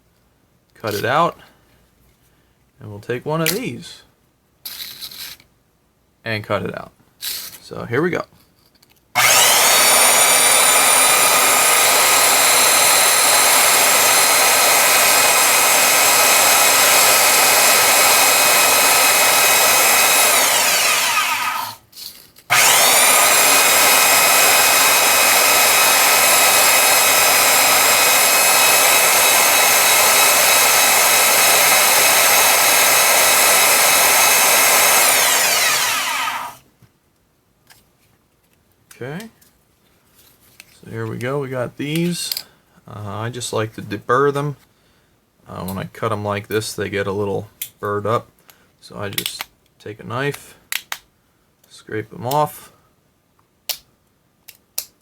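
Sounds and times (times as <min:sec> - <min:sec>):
bandsaw cutting plastic: 0:09.2 - 0:36.7.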